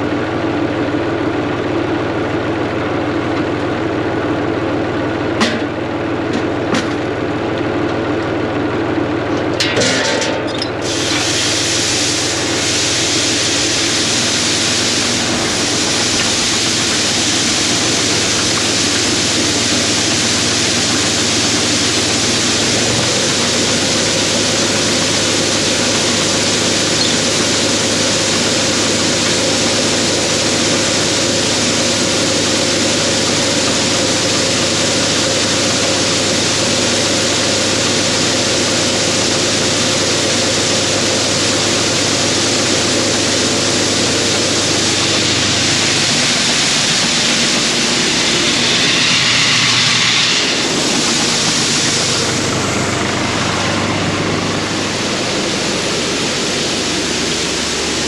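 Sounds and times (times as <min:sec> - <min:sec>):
combine harvester engine drone: 0:00.0 - 0:58.0
loud even rushing noise: 0:44.0 - 0:58.0.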